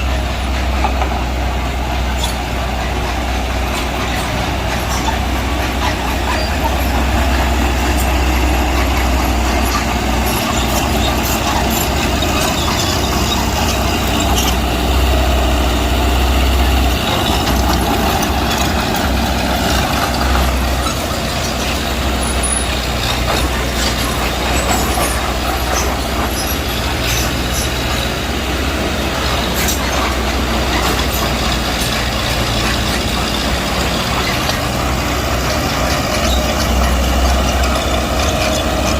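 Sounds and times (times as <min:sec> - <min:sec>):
bulldozer engine rumbling: 0:00.0 - 0:38.9.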